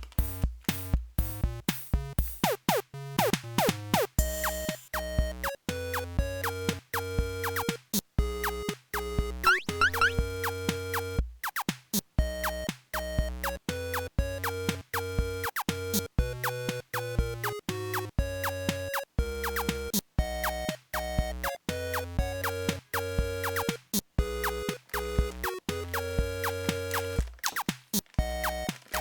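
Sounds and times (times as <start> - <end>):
drum-machine beat: 7.2 - 7.7, 9.4 - 11.6, 18.4 - 29.0
bouncy synth notes: 9.4 - 10.7.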